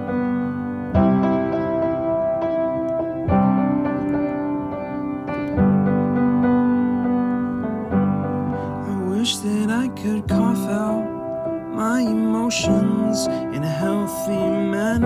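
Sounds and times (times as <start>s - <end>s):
piano chords: 0.0s - 15.0s
person singing: 8.8s - 15.0s.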